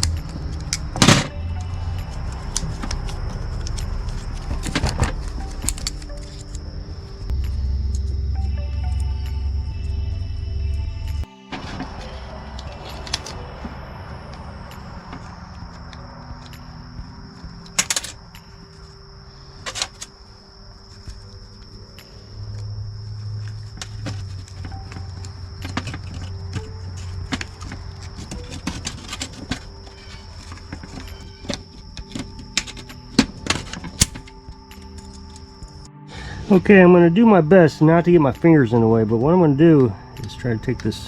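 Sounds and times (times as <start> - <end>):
plastic parts clicking and knocking: 0.0 - 1.4, 2.5 - 6.6, 17.6 - 18.2, 19.6 - 20.1, 23.5 - 35.4
low hum: 0.0 - 41.0
faint high tone: 7.3 - 16.8.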